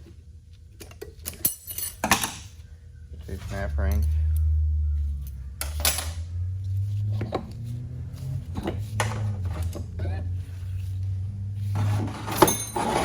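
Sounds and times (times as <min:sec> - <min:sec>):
metal parts clinking: 0:01.2 - 0:02.6, 0:05.2 - 0:06.2, 0:12.0 - 0:13.0
low hum: 0:02.6 - 0:13.0.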